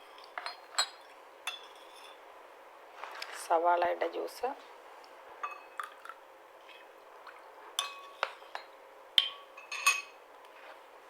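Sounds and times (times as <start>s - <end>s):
clinks against drinking glass: 7.8s - 10.2s.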